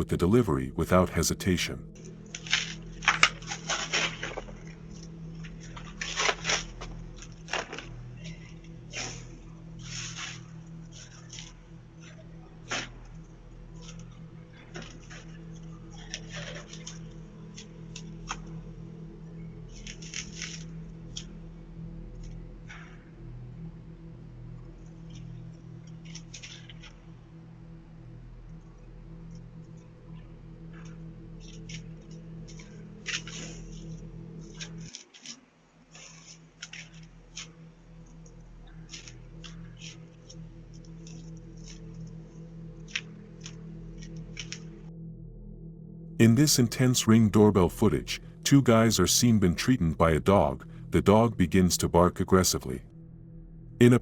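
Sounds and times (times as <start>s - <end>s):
faint clicks and rustles: 2.0s - 18.6s, 30.7s - 42.2s.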